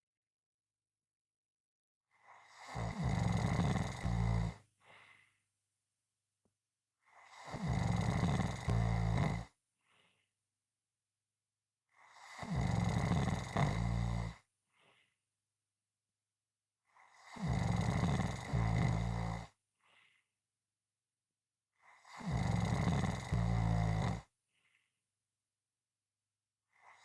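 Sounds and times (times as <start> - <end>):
loud rasping snoring: 2.2 - 4.7, 7.1 - 9.6, 11.9 - 14.4, 16.9 - 19.6, 21.8 - 24.3, 26.7 - 27.0
faint breath: 4.8 - 5.4, 9.8 - 10.3, 14.7 - 15.2, 19.8 - 20.3, 24.5 - 25.0.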